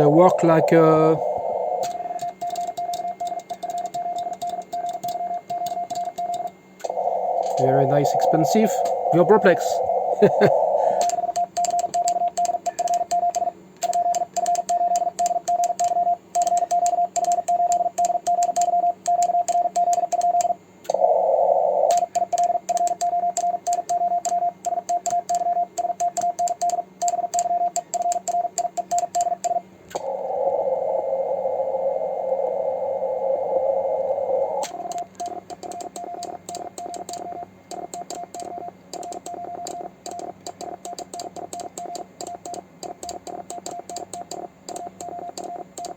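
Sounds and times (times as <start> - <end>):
radio receiver hiss: 0.0 - 2.2, 6.8 - 11.3, 29.9 - 38.7
morse code tone: 0.0 - 45.9.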